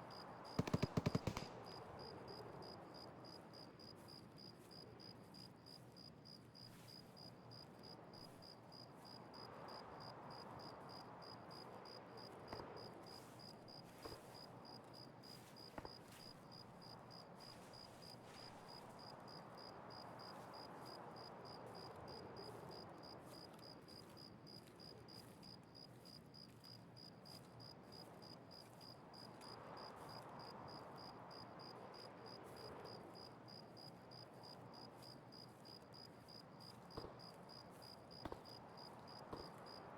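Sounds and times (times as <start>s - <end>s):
faint insect chirping: 0.0s - 39.9s
low background noise: 0.0s - 39.9s.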